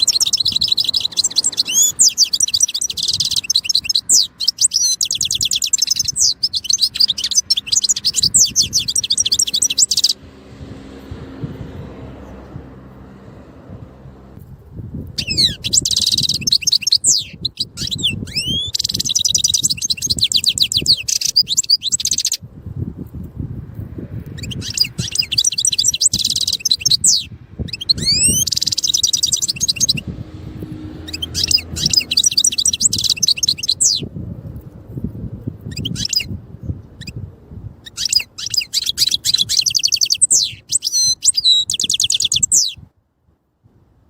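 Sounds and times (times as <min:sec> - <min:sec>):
goldfinch singing: 0:00.0 - 0:10.2, 0:15.2 - 0:22.4, 0:24.3 - 0:30.1, 0:30.9 - 0:34.1, 0:35.6 - 0:37.2, 0:37.8 - 0:42.8.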